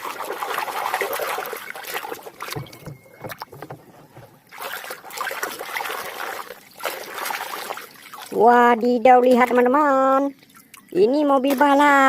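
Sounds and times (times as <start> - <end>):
water splashing and sloshing: 0.0 - 12.0
soft knocks: 2.5 - 4.4.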